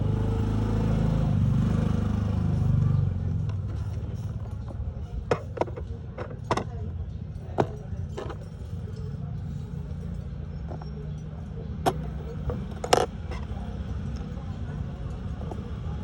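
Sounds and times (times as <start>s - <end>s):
sharp clicks and knocks: 3.3s - 8.7s, 10.6s - 14.4s.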